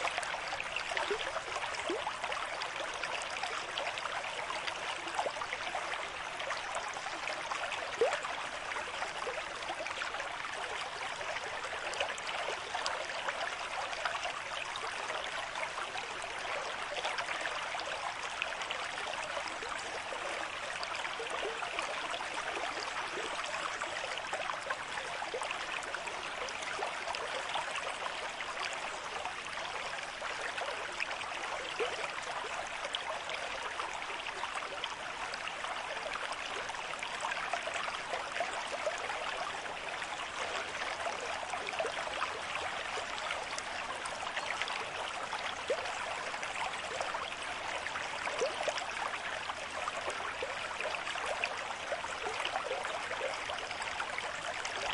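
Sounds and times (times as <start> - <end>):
stream of water flowing: 0.0 - 54.9.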